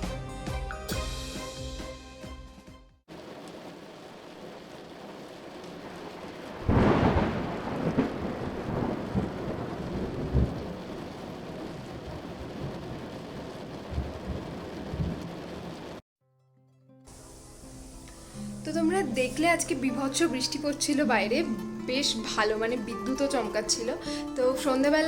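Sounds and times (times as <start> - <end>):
heavy rain: 3.1 - 16.0
thunderclap rumbling: 3.1 - 16.0.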